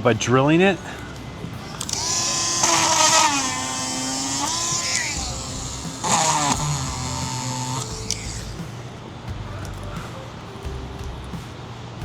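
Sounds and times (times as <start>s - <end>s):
drill grinding glass: 1.6s - 8.6s
small high-speed drill whining: 1.6s - 8.6s.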